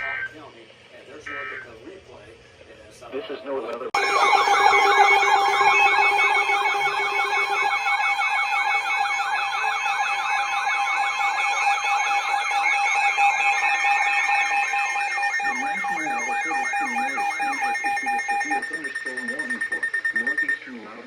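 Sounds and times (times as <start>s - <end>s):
low hum: 4.0s - 10.3s
steady electronic tone: 4.0s - 20.6s
warbling siren-like tone: 4.0s - 20.6s.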